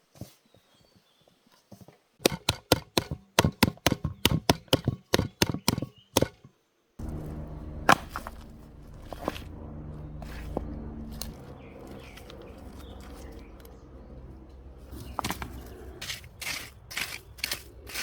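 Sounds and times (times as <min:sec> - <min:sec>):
steady low hum: 0:07.0 - 0:18.0.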